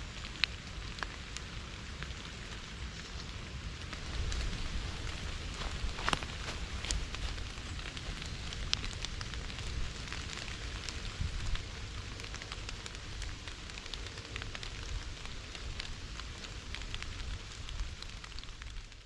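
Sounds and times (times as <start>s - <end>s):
rain pattering: 0.0s - 19.0s
low rumble: 3.2s - 16.3s.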